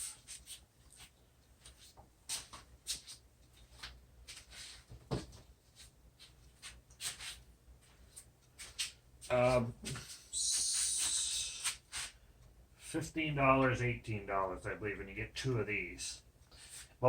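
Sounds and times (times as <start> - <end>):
soft rustles: 0.0 - 12.2.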